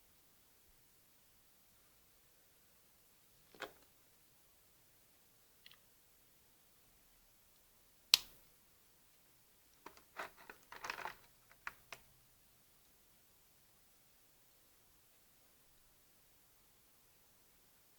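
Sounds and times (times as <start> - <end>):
small clicks and rustles: 9.1 - 12.1.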